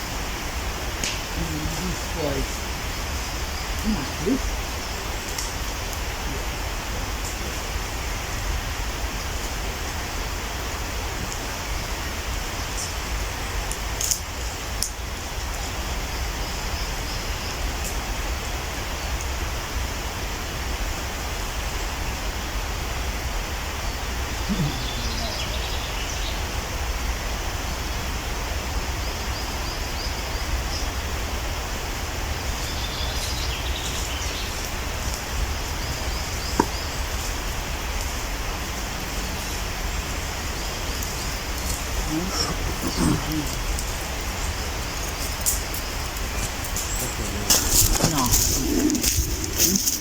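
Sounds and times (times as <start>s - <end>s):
faint high chirps: 24.4s - 26.3s.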